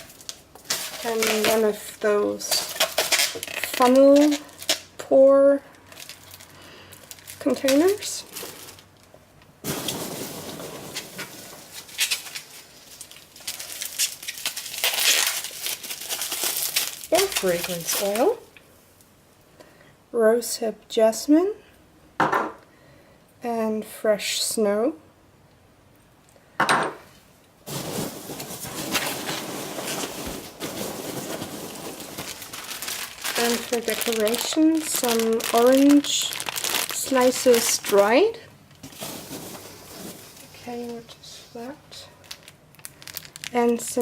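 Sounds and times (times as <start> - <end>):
plastic packaging rustling: 0.0 - 5.0, 5.6 - 18.6, 27.6 - 44.0.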